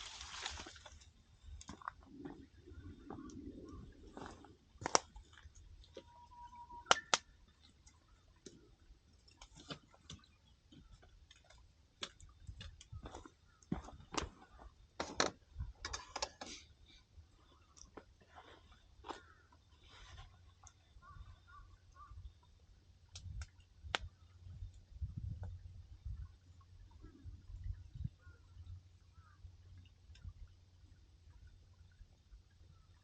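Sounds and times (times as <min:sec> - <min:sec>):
campfire crackling and popping: 0:04.8 - 0:05.4.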